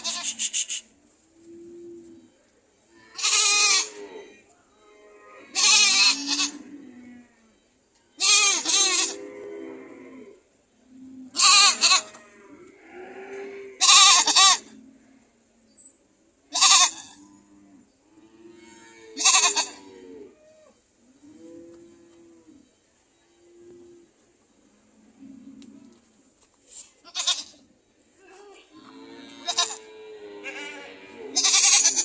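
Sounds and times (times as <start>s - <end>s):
soft low goat bleats: 0.0s - 0.8s, 5.5s - 7.4s, 8.2s - 9.2s, 11.3s - 12.3s, 19.2s - 19.8s, 27.0s - 27.6s, 28.2s - 32.0s
goats screaming: 8.2s - 9.2s, 30.4s - 32.0s.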